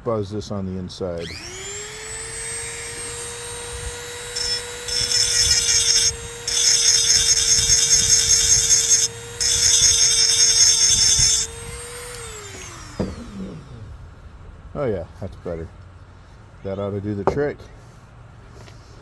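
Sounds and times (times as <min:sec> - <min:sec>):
burr grinding metal: 0:01.2 - 0:13.9
rotary tool whining: 0:01.2 - 0:14.0.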